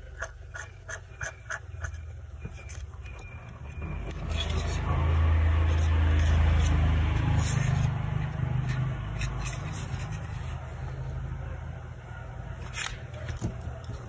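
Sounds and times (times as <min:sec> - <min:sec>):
low motor rumble: 0:02.0 - 0:12.6.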